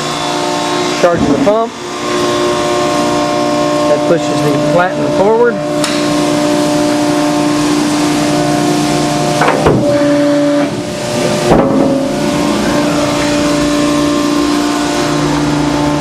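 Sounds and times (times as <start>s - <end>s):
hydraulic pump motor humming: 0.0s - 16.0s.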